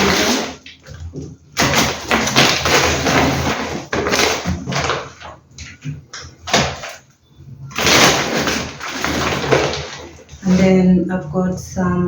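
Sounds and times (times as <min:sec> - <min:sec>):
grocery bags rustling: 0:00.0 - 0:00.6, 0:01.6 - 0:05.4, 0:07.7 - 0:11.0.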